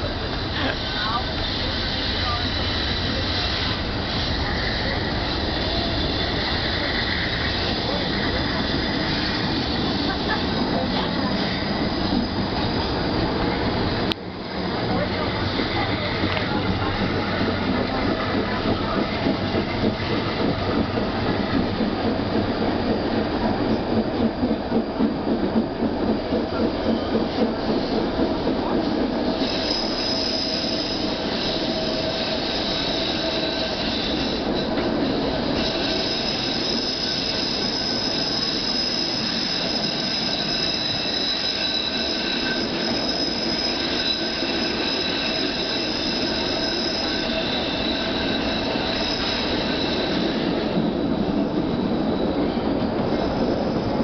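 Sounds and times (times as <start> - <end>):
train wheel clatter: 0.0 - 54.0
high-pitched wheel squeal: 29.3 - 54.0.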